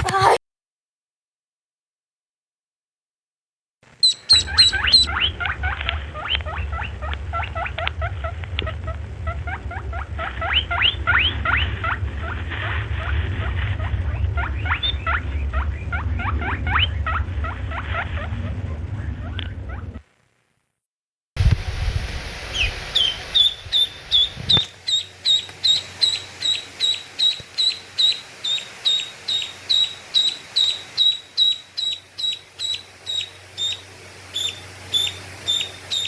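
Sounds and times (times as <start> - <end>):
duckling peeping: 4.0 - 18.6, 22.4 - 36.0
low hum: 5.0 - 20.0.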